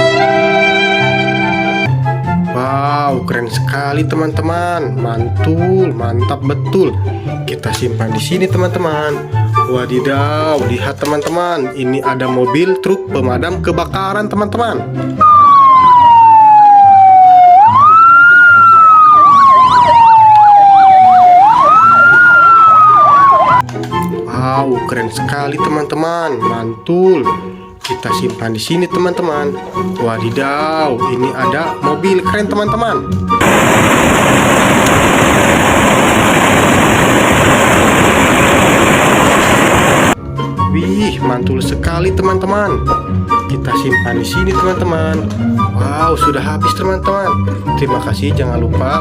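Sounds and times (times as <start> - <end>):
toy electronic siren wailing: 15.2 - 23.6
loud engine-like noise: 33.4 - 40.2.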